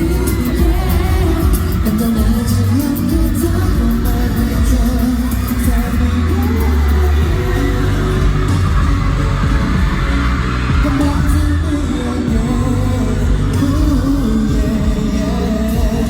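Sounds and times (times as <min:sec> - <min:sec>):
heavy bass: 0:00.0 - 0:16.0
loud live pop music: 0:00.0 - 0:16.0
person singing: 0:00.0 - 0:16.0.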